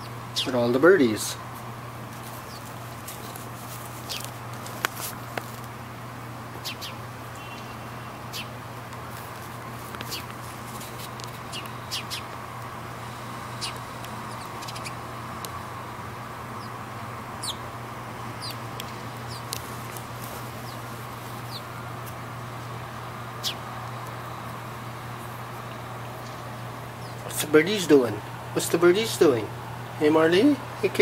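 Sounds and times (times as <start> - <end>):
small birds chirping: 0.0 - 0.8, 2.2 - 5.7, 6.5 - 15.7, 16.4 - 24.6, 25.6 - 28.7
steady low hum: 0.0 - 31.0.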